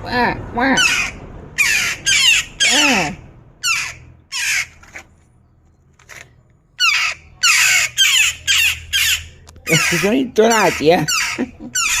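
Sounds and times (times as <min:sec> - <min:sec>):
jackdaws calling: 0:00.7 - 0:05.0, 0:06.8 - 0:12.0.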